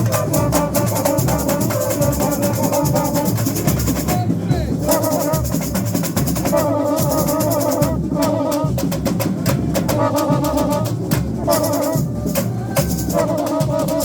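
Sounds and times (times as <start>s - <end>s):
samba drums playing: 0.0s - 14.0s.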